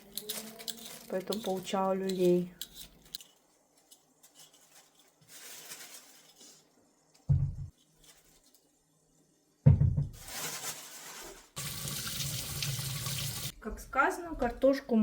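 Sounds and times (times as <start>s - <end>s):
soft scraping rustle: 2.8s - 6.8s, 7.8s - 8.8s, 10.2s - 11.6s
tap water running into sink: 11.6s - 13.5s.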